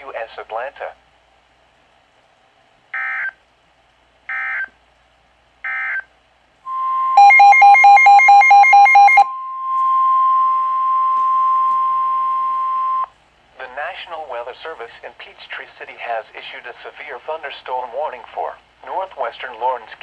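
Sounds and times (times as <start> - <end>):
steady alert tone: 6.7 - 12.2.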